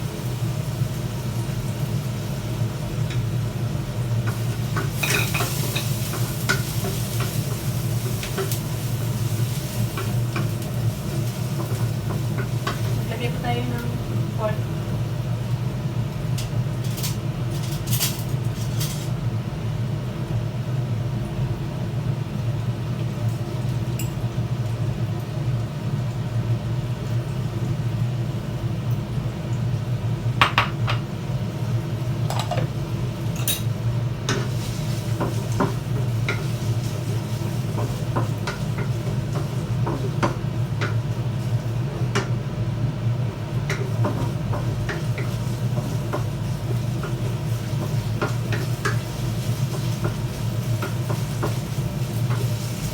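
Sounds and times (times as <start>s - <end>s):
utensil stirring food in pan: 0.0s - 19.2s, 31.4s - 52.9s
utensil clinking against pan: 32.3s - 32.7s.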